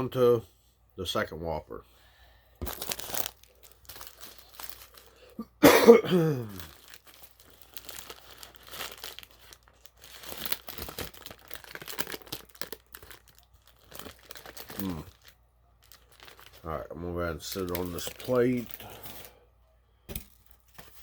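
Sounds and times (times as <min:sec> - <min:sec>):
paper wrapper crinkling and tearing: 0:02.6 - 0:05.4, 0:06.3 - 0:19.4.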